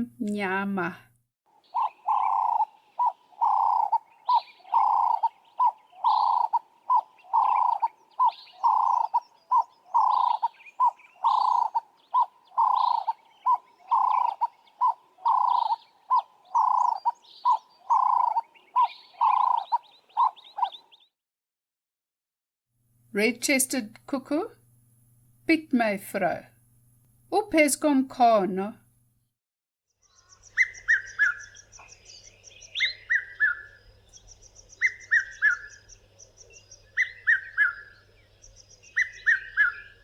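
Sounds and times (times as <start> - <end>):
high chirps: 1.7 - 21.0
dove cooing: 1.8 - 20.8.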